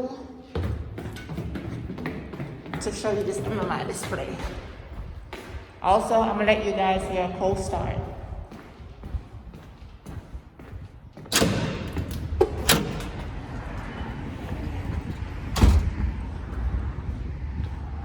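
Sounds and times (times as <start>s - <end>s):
heavy door thud: 11.2s - 16.4s
door latch clicks: 11.3s - 13.4s
door banging shut: 11.3s - 13.6s, 15.4s - 16.1s.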